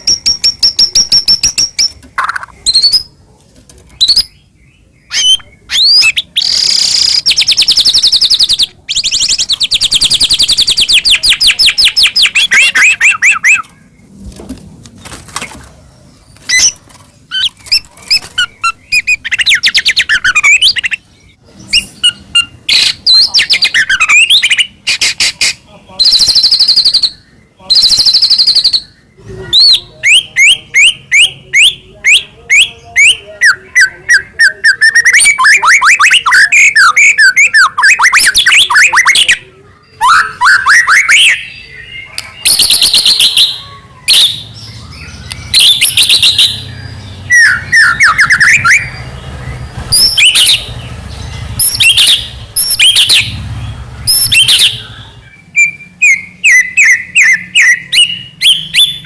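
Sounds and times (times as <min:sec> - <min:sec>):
bird singing whistled notes: 0:04.0 - 0:13.7, 0:26.0 - 0:29.0, 0:29.6 - 0:59.0.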